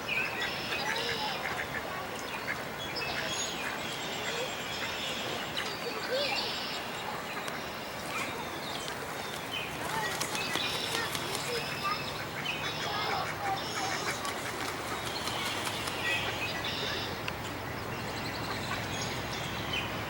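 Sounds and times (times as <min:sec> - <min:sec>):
ducklings peeping: 0:09.7 - 0:19.8.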